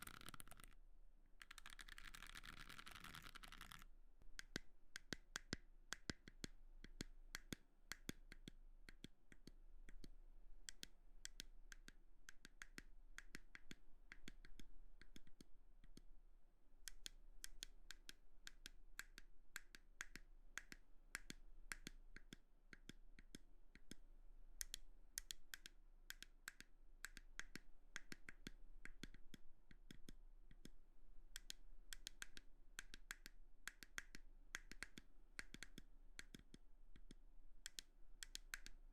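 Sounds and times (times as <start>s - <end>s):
crisp clicking and tapping: 0.0s - 0.8s, 1.4s - 3.8s.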